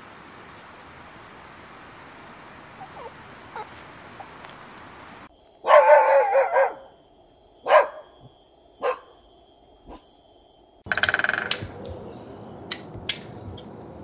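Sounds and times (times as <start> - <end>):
dog barking: 2.8 - 4.3, 5.6 - 6.9, 7.6 - 8.2, 8.8 - 9.2.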